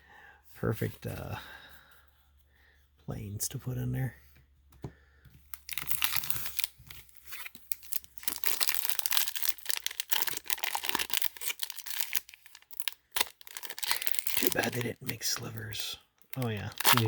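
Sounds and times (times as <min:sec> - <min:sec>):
foil wrapper crinkling and tearing: 0:05.5 - 0:17.0.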